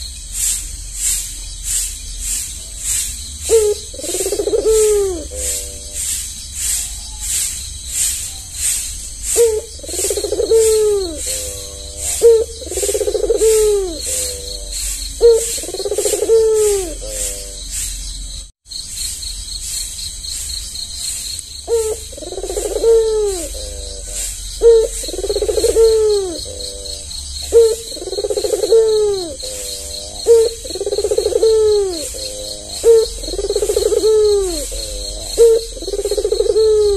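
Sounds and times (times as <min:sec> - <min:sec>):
faint high hissing pulse: 0:00.0 - 0:18.5
dove cooing: 0:03.4 - 0:06.8, 0:09.2 - 0:17.8, 0:21.7 - 0:36.9.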